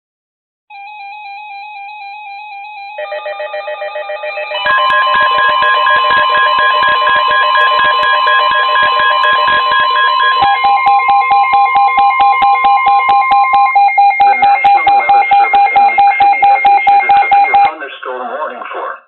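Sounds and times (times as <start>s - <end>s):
steady warning tone: 0.7s - 17.8s
warbling electronic alert beeps: 2.9s - 17.7s.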